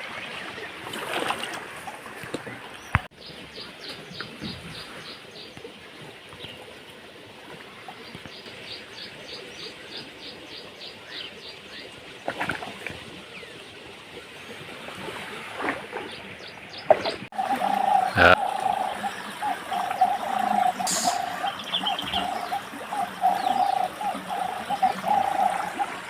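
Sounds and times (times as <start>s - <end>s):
steady outdoor hiss: 16.2s - 26.0s
bird calling: 17.3s - 26.0s.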